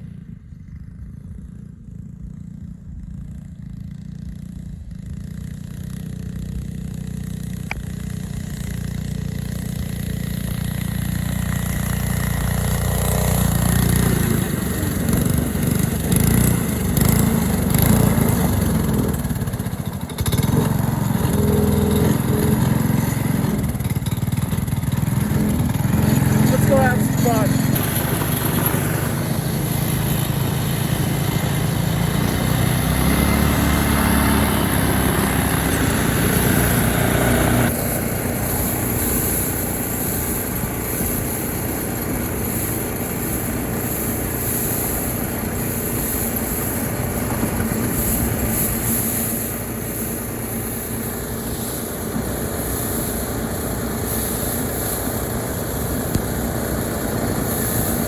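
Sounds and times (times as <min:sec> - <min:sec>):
small engine revving: 0:00.0 - 0:58.0.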